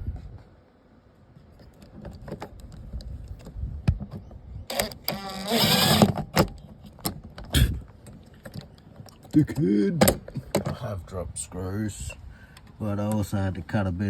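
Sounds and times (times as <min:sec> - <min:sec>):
cordless drill whirring: 0:04.7 - 0:06.2.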